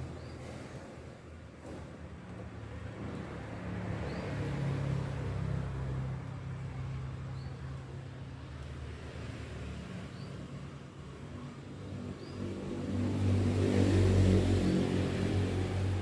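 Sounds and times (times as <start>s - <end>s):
motor vehicle passing by: 0.0s - 16.0s.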